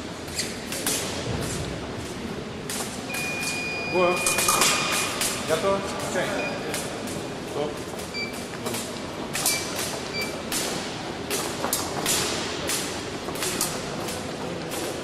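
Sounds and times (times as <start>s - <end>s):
short high beeps: 3.1s - 4.8s.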